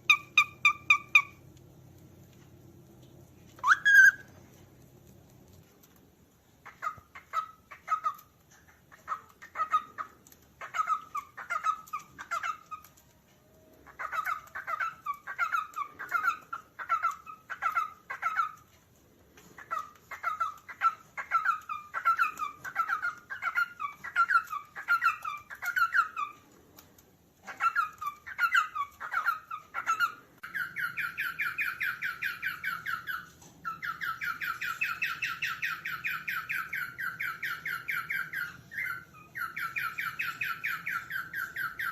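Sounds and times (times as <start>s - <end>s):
cockatiel chirping: 0.0s - 1.4s, 3.5s - 4.6s, 6.6s - 13.1s, 13.8s - 18.8s, 19.4s - 41.9s
fast rattling bird chatter: 6.6s - 13.1s, 13.8s - 18.7s, 19.4s - 26.5s, 27.4s - 41.9s.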